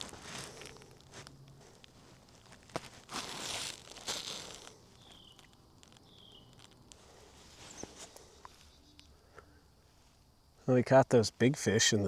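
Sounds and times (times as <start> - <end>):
rustling and scraping handling: 0.0 - 9.1.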